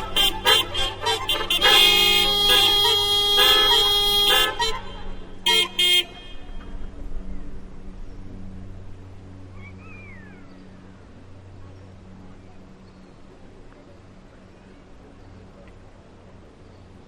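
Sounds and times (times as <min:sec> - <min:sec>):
car horns honking: 0:00.0 - 0:06.8.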